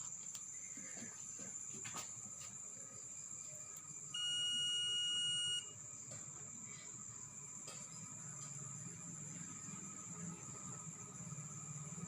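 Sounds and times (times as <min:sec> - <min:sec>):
multimeter high-pitched beep: 0:04.2 - 0:05.8.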